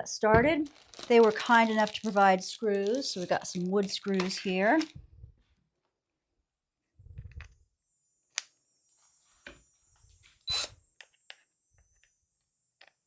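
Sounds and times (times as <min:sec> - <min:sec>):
screws and hardware clicking: 0:00.7 - 0:04.9.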